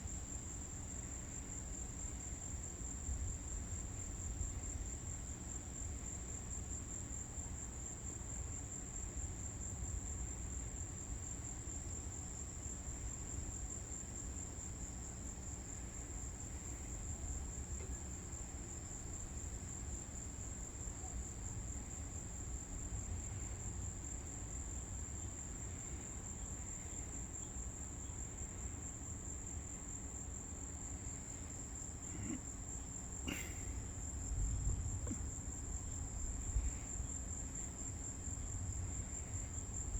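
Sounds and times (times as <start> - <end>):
insects trilling: 0.0 - 39.9
low steady rumble: 33.3 - 39.9.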